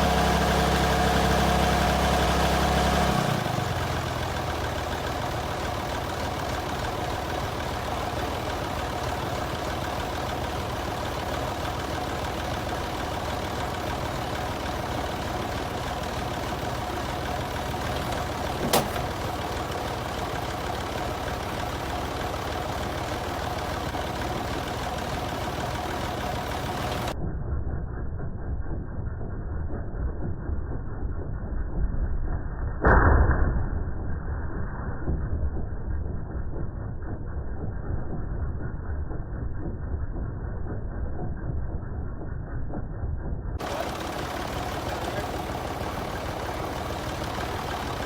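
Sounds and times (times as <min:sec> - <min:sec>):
diesel tractor engine idling: 0:00.0 - 0:27.2, 0:43.6 - 0:48.0.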